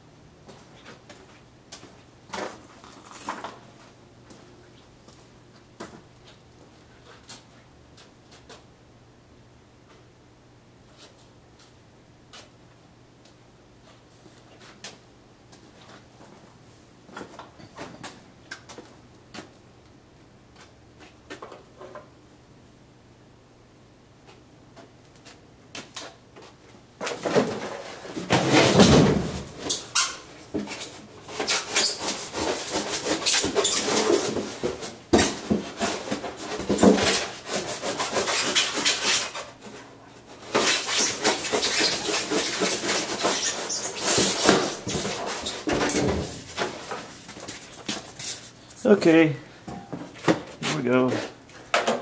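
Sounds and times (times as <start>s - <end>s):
styrofoam squeaking and snapping: 29.7s - 30.3s, 31.4s - 34.4s, 40.5s - 46.0s.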